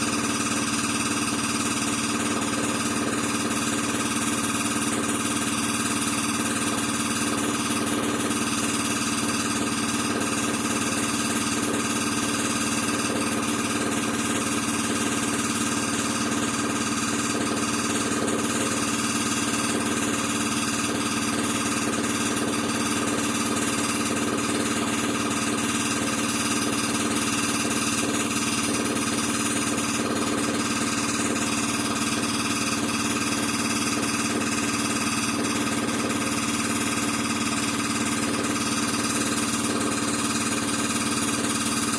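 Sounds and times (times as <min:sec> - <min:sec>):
air compressor running: 0:00.0 - 0:41.9.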